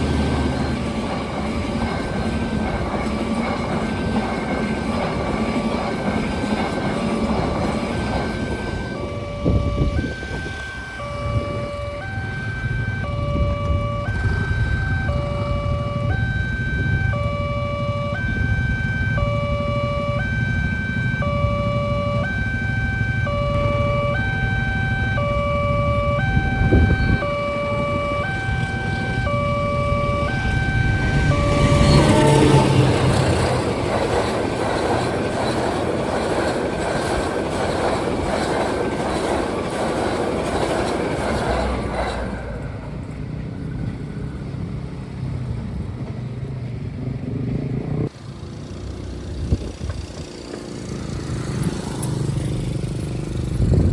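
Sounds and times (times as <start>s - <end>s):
low engine rumble: 0.0s - 53.9s
train rushing and rumbling: 0.0s - 53.9s
level crossing alarm chime: 7.8s - 33.7s.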